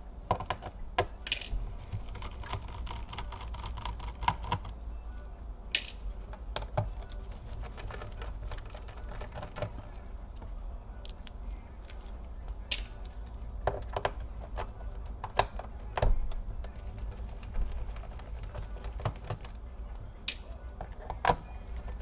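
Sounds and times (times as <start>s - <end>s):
low steady hum: 0.0s - 22.0s
screwdriver clicking on screws: 1.2s - 1.5s.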